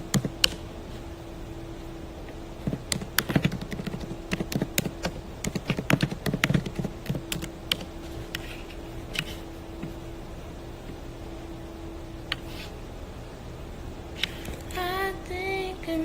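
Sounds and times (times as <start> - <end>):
steady low hum: 0.0 - 16.0
quick taps and clicks: 2.7 - 8.5.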